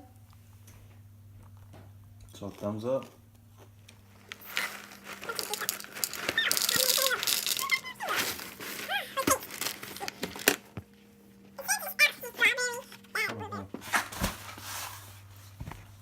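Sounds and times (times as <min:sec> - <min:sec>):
plastic bag crinkling: 0:04.0 - 0:10.8
dry cereal rattling: 0:04.1 - 0:10.6.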